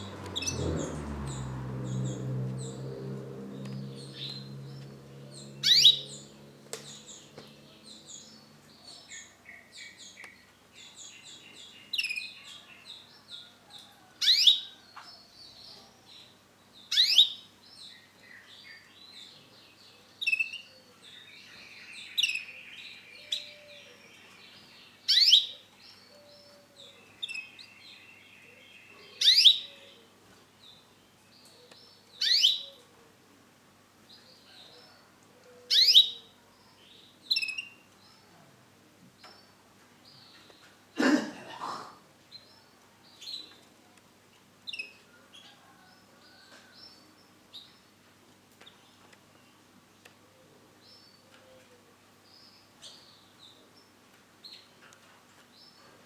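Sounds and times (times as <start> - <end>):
low hum: 0.0 - 8.4
twittering trills: 3.5 - 6.4
canary calling: 3.9 - 7.3.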